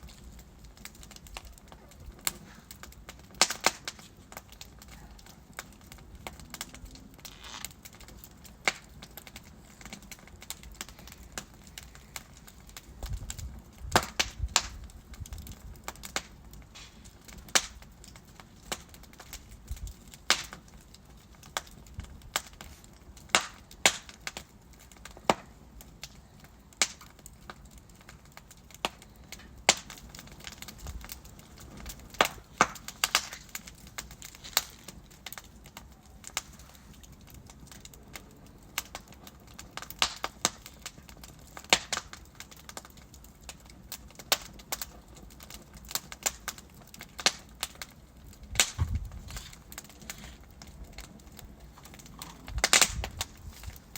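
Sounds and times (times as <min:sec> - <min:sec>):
wood fire crackling and popping: 0:00.0 - 0:53.9.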